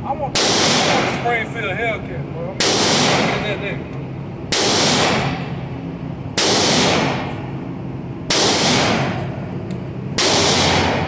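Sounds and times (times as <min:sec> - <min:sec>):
gunshots with long echo: 0:00.4 - 0:01.4, 0:02.6 - 0:03.6, 0:04.5 - 0:05.6, 0:06.4 - 0:07.6, 0:08.3 - 0:09.4, 0:10.2 - 0:11.0.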